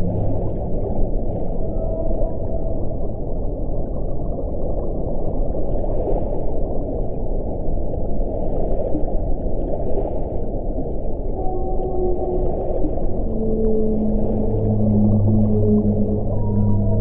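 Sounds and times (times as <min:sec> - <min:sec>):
whale vocalizations: 0:00.0 - 0:04.6, 0:11.1 - 0:17.0
deep ocean rumble: 0:00.0 - 0:17.0.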